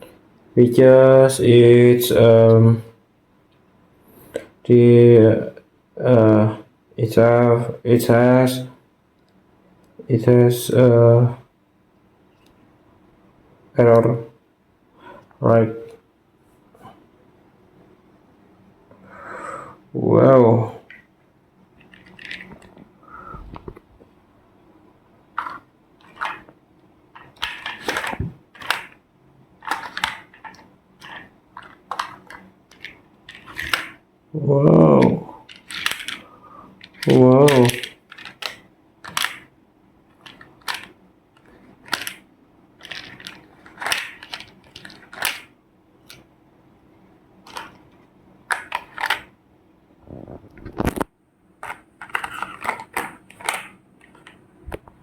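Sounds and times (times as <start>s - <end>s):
plastic toys clacking together: 21.8s - 22.8s, 25.4s - 26.5s, 27.2s - 29.0s, 29.6s - 34.0s, 35.0s - 36.2s, 36.8s - 39.5s, 40.1s - 42.2s, 42.8s - 46.2s, 47.5s - 47.8s, 48.5s - 49.3s, 51.6s - 54.4s.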